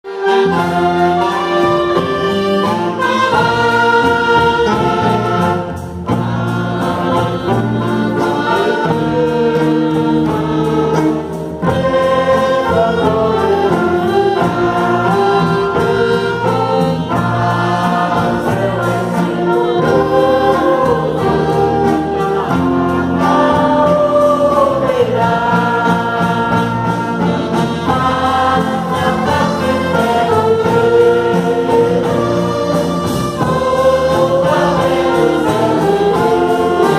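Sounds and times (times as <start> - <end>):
orchestra with brass: 0.0 - 36.9
choir singing a hymn: 0.1 - 36.9.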